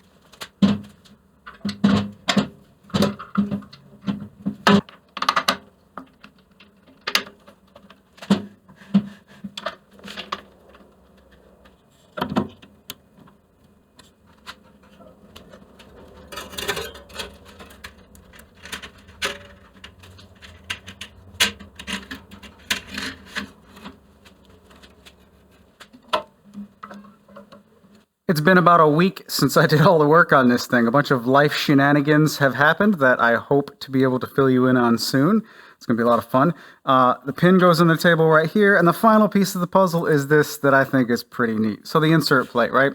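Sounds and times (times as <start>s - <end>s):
parts rattling: 0.2s - 28.0s.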